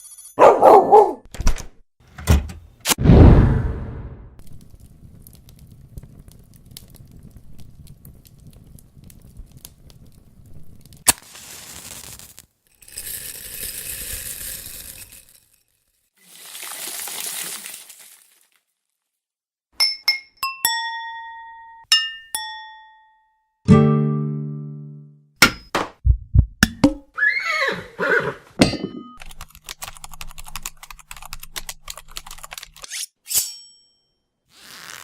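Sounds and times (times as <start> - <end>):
whoosh: 3.0 - 4.4
low crackling rumble: 3.0 - 12.0
bursts of hiss: 11.1 - 12.5.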